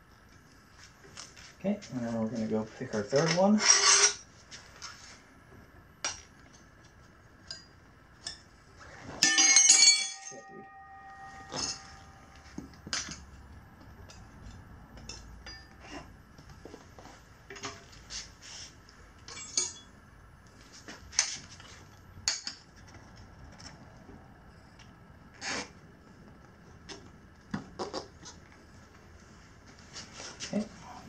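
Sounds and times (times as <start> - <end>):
tire irons clinking on metal rim: 9.2 - 16.0, 19.2 - 20.0.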